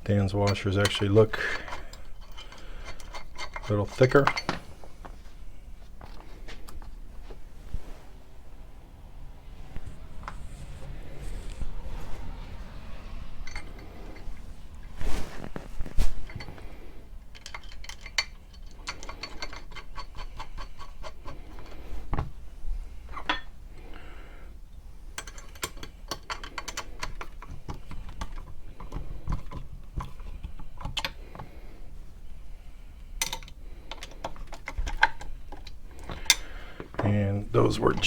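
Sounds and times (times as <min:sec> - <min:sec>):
metal bolts clicking and clinking: 0:00.2 - 0:04.8, 0:13.2 - 0:14.9, 0:16.2 - 0:21.9, 0:23.1 - 0:23.6, 0:25.1 - 0:31.4, 0:33.2 - 0:38.0.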